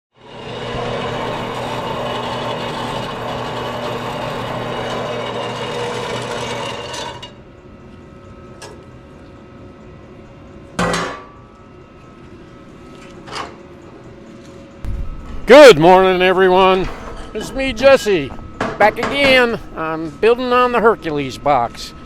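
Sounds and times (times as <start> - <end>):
machine running: 0.1 - 7.8, 11.6 - 22.0
sharp knocks: 14.8 - 15.5.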